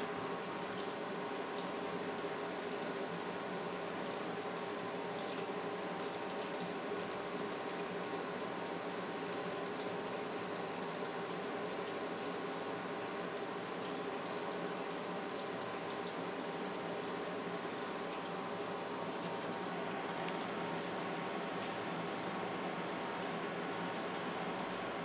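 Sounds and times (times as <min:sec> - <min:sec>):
computer fans whirring: 0:00.0 - 0:25.0
keyboard keys clicking: 0:05.2 - 0:08.3, 0:16.6 - 0:17.0.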